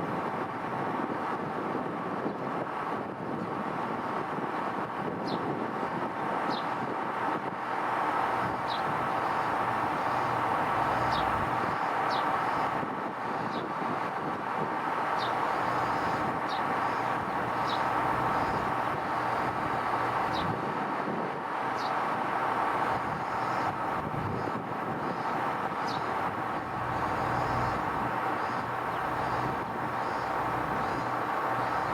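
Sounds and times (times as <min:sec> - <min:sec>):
steady rushing noise: 0:14.5 - 0:31.9.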